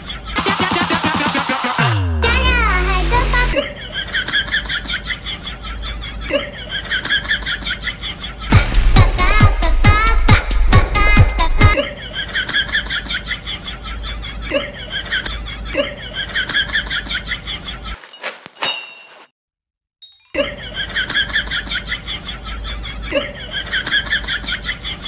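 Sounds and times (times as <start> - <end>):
cartoon laughter: 3.5 - 8.5, 11.8 - 18.0, 20.4 - 25.0.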